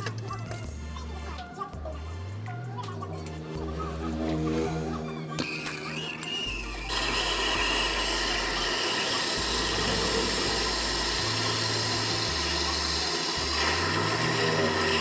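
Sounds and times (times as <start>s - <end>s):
brazing torch hissing: 4.8s - 15.0s.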